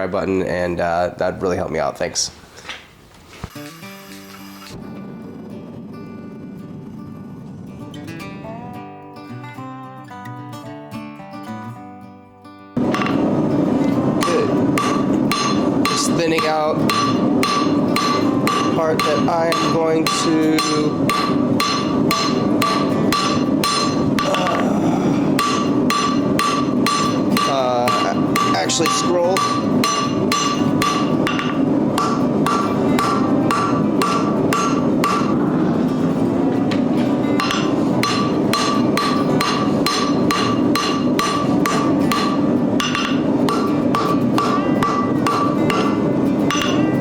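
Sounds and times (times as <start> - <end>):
hammer striking steel on anvil: 12.8 - 35.5, 36.7 - 47.0.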